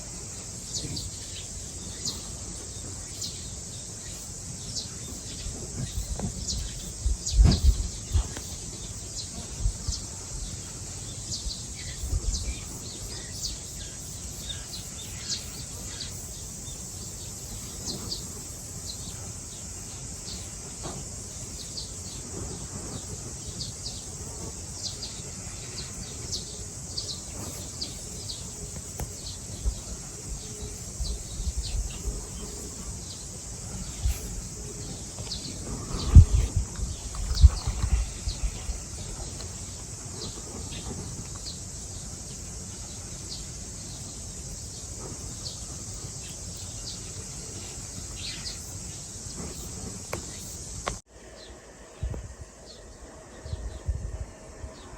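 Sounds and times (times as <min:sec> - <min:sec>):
small birds chirping: 0:00.0 - 0:53.9
steady outdoor hiss: 0:00.0 - 0:54.9.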